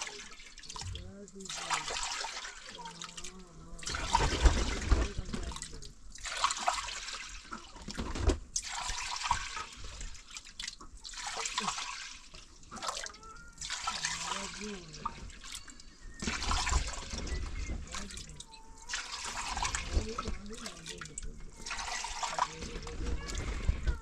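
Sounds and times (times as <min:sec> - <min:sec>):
water running and splashing: 0:00.0 - 0:24.0.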